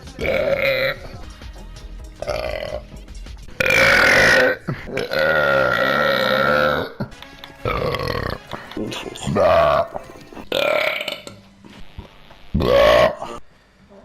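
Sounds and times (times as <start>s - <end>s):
man burping: 0.2s - 1.2s, 2.2s - 2.9s, 3.6s - 11.3s, 12.6s - 13.4s.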